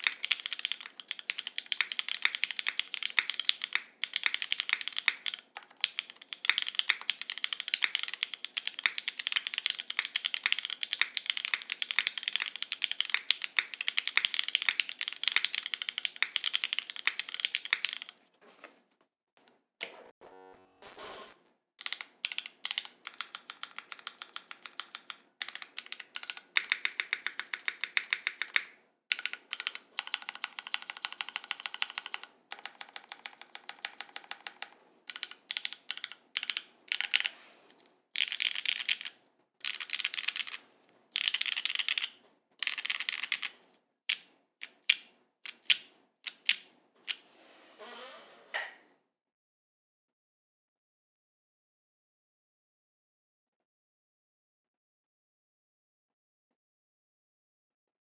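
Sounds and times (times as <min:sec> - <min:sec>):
mechanical keyboard clacks: 0:00.0 - 0:18.1, 0:21.8 - 0:37.3, 0:38.2 - 0:40.6, 0:41.2 - 0:43.5, 0:44.1 - 0:46.7.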